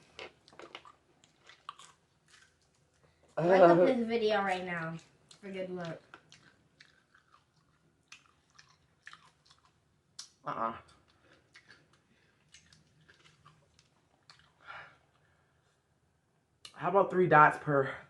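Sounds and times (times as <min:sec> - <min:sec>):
chewing chicken: 0:00.0 - 0:03.4, 0:05.0 - 0:15.3.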